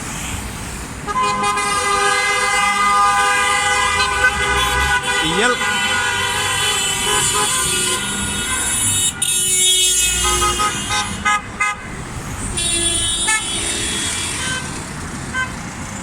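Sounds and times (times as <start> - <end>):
road traffic: 0.0 - 16.0
car horns honking: 1.0 - 15.6.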